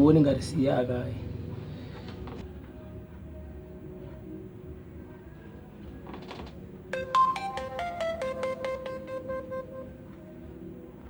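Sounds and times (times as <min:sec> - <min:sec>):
phone beeping melody: 0:06.9 - 0:10.2.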